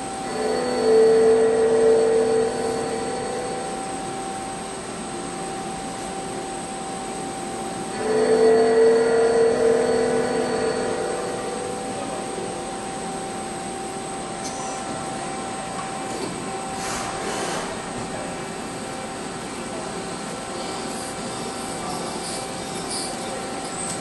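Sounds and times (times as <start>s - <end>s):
cnc machine whining: 0.0s - 24.0s.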